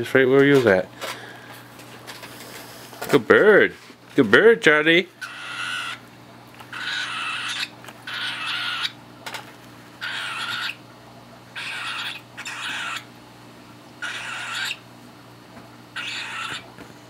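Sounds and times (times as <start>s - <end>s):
cockatiel raspy feeding noise: 6.6s - 9.0s, 10.0s - 10.8s, 11.5s - 13.1s, 14.0s - 14.8s, 16.0s - 16.8s.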